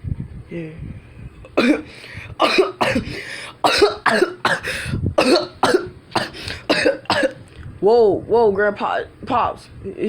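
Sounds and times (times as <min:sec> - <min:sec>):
man coughing: 0:01.6 - 0:07.4.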